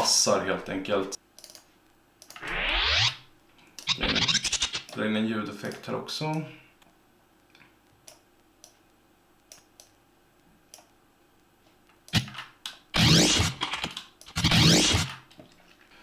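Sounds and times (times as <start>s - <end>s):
sudden hit sound effect: 3.9s - 4.9s.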